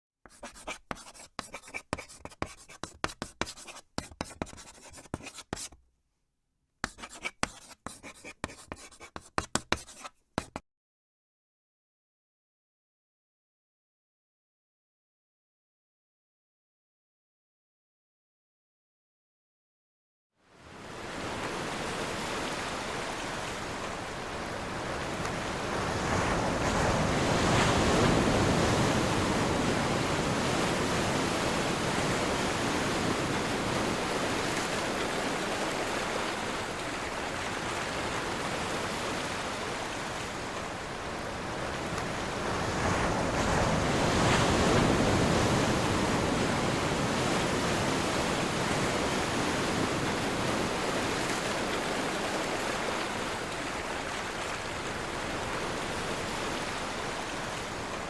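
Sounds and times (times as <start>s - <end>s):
ocean waves breaking: 20.6s - 58.0s.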